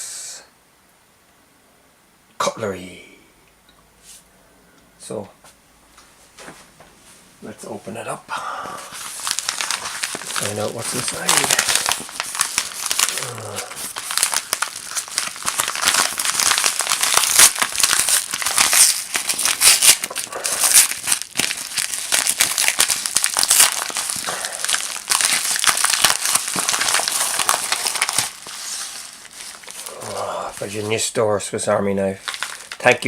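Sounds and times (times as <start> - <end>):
packaging crinkling and tearing: 8.8 - 33.0.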